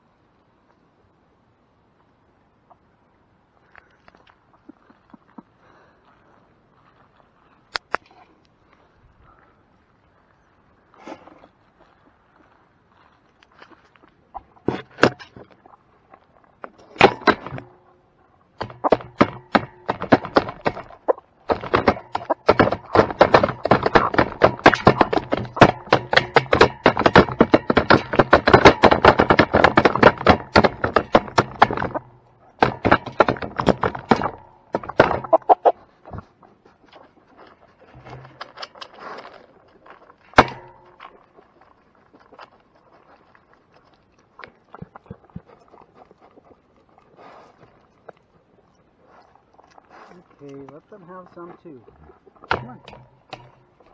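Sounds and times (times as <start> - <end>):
tapping and knocking on wood: 17.0 - 17.8, 18.6 - 35.6, 40.4 - 40.9, 52.5 - 53.7.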